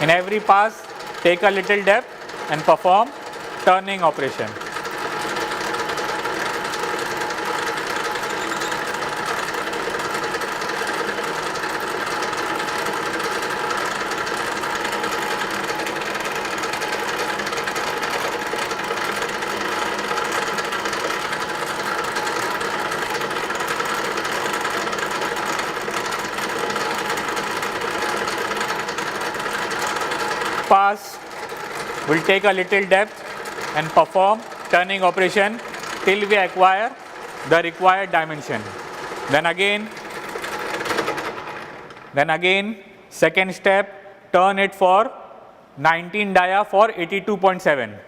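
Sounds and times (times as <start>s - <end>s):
lathe motor humming: 0.0s - 42.2s.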